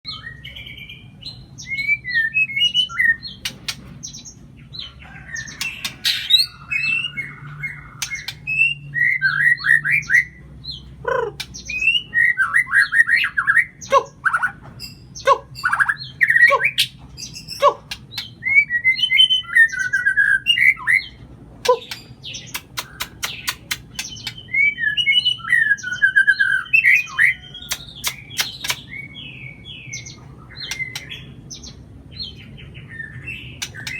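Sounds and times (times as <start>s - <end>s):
bird singing whistled phrases: 11.7s - 13.7s.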